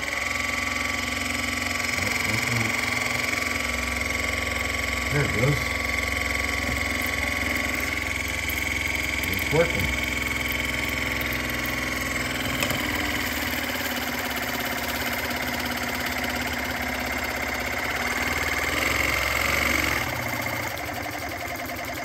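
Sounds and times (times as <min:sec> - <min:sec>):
water flosser pump buzzing: 0:00.0 - 0:22.0.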